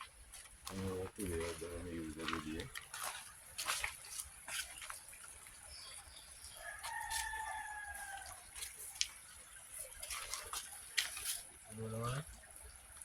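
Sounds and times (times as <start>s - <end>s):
rooster crowing faintly: 6.6s - 8.5s
light clicks and rustles: 9.9s - 11.5s.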